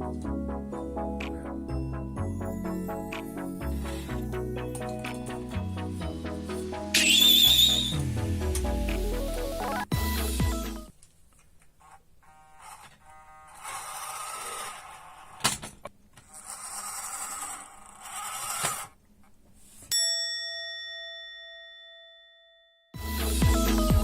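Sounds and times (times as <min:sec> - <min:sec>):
bell-like ding: 0:19.9 - 0:23.0.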